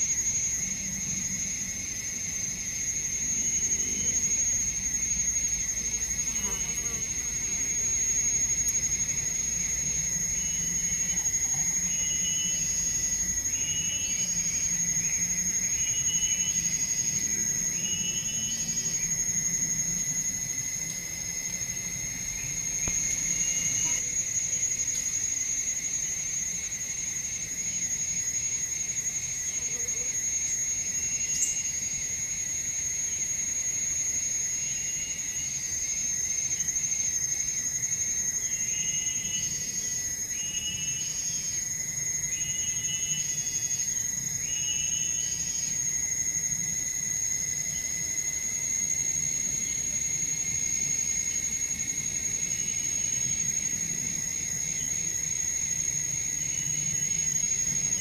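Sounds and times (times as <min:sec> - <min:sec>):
insect chirping call: 0:00.0 - 0:58.0
insects high-pitched whine: 0:00.0 - 0:58.0.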